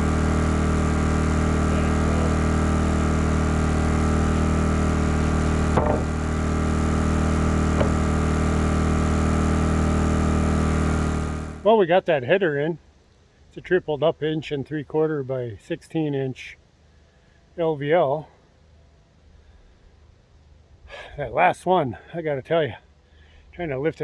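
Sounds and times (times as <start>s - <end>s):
engine running steadily: 0.0s - 12.2s.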